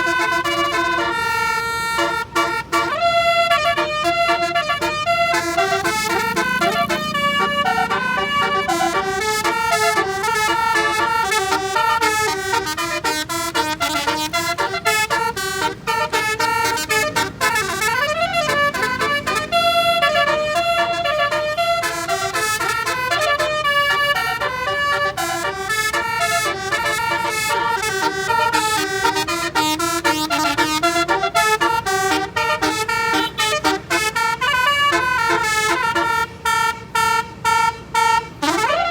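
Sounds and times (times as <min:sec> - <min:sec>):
musical bus horn melody: 0:00.0 - 0:38.9.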